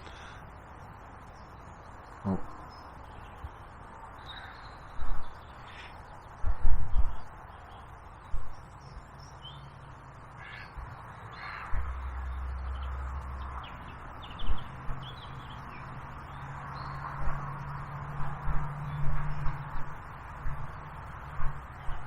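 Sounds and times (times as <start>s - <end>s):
small birds chirping: 0.0s - 22.0s
wind rumble on microphone: 0.6s - 22.0s
crow cawing: 10.4s - 12.1s.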